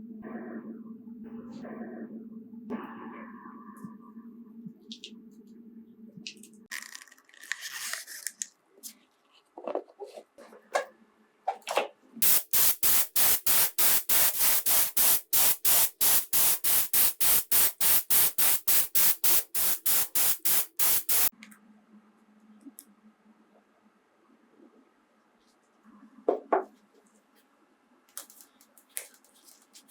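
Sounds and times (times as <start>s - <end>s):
spray bottle squirting: 12.2s - 21.3s.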